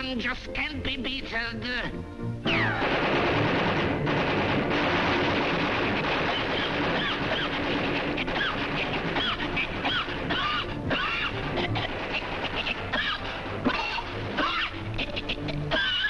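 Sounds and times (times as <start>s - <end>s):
falling whistle: 2.4s - 3.2s
squeaky chirps: 2.4s - 3.2s, 6.2s - 16.0s
cartoon machine gun firing: 2.5s - 11.4s.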